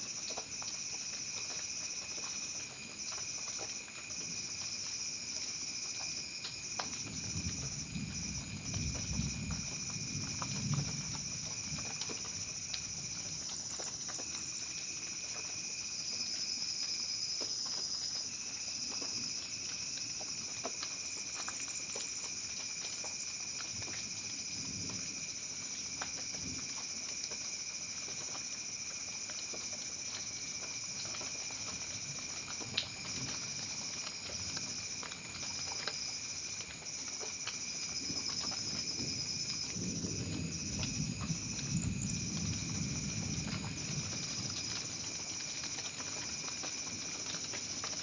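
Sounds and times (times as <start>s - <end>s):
rain falling: 0.0s - 48.0s.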